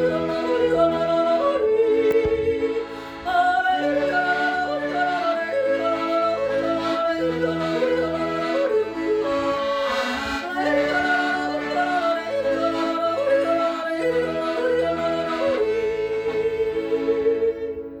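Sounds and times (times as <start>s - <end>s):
instrumental accompaniment with bass: 0.0s - 18.0s.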